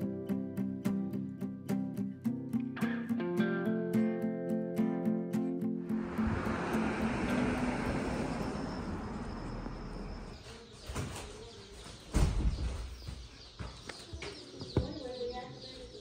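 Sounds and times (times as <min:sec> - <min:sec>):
baby chicks peeping: 0:09.8 - 0:16.0.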